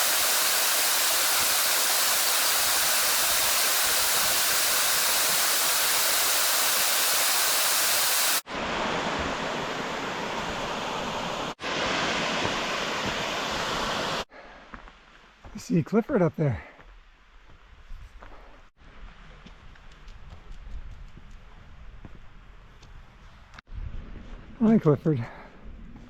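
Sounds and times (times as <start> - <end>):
rushing falling water: 0.0 - 14.3.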